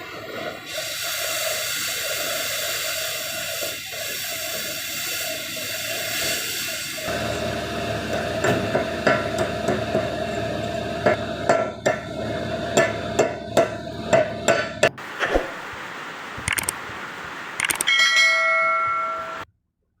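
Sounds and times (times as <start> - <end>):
light clicks: 16.4 - 16.8, 17.6 - 17.9
ringing metallic tone: 17.9 - 19.4.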